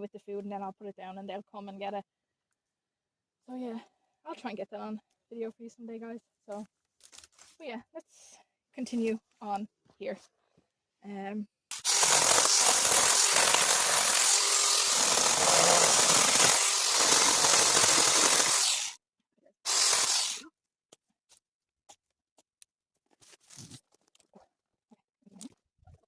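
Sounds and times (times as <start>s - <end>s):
power cutting tool cutting bush: 11.7s - 19.0s, 19.7s - 20.4s.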